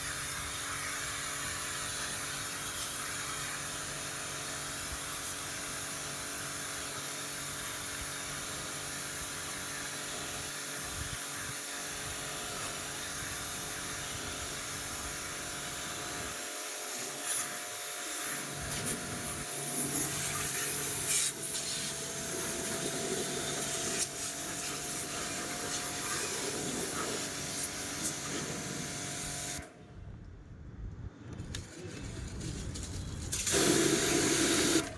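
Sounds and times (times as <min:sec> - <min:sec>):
water spraying: 0:00.0 - 0:29.6, 0:32.3 - 0:34.9
motor water washer humming: 0:05.6 - 0:29.6, 0:33.3 - 0:34.9.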